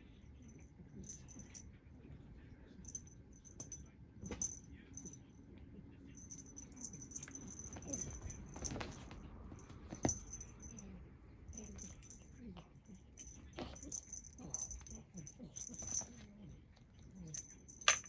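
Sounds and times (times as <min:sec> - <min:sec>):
small bell jingling: 0:00.4 - 0:01.7, 0:02.8 - 0:05.3, 0:06.1 - 0:18.0
light scuffling: 0:06.9 - 0:10.7.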